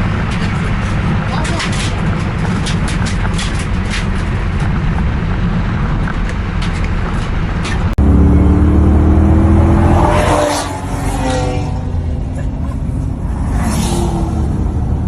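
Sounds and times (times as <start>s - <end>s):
wind buffeting at speed: 0.0s - 15.0s
car engine revving up: 8.0s - 15.0s.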